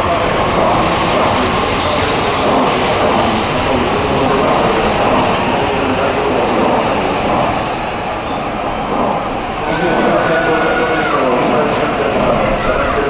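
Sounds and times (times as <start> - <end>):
train rail rumble: 0.0 - 13.0
high wheel squeal: 6.3 - 13.0.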